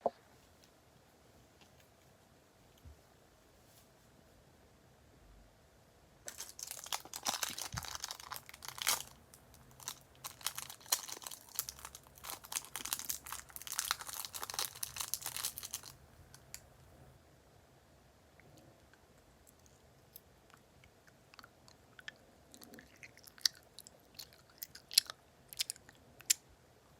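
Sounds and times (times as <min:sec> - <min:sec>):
packaging crinkling and tearing: 0:06.3 - 0:16.6.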